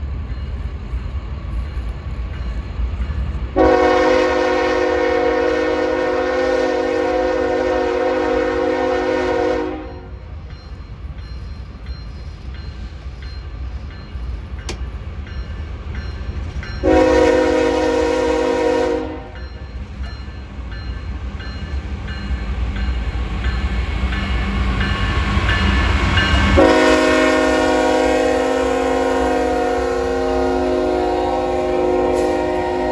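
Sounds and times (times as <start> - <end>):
train rumbling: 0.0 - 32.9
locomotive horn blasts: 3.6 - 10.1, 16.8 - 19.4, 26.6 - 32.9.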